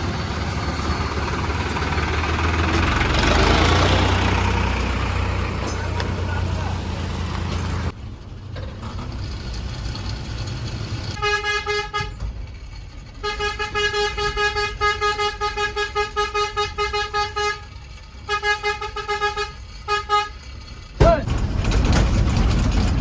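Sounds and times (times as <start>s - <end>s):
low engine rumble: 0.0s - 23.0s
vehicle horn pulsing: 11.2s - 12.2s, 13.2s - 20.5s.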